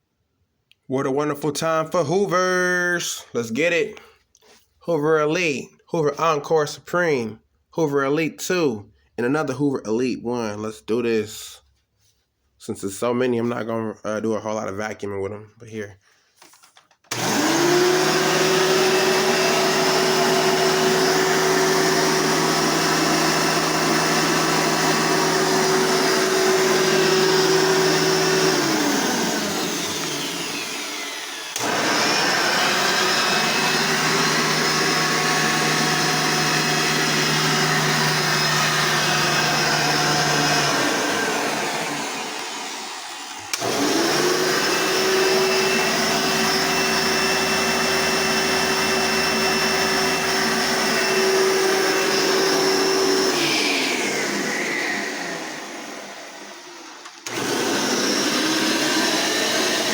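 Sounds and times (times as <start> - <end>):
vacuum cleaner whining: 16.9 - 59.9.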